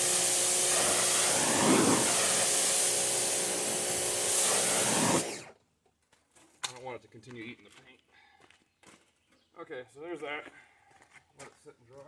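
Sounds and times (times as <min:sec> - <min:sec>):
water spray hissing on metal: 0:00.0 - 0:05.3.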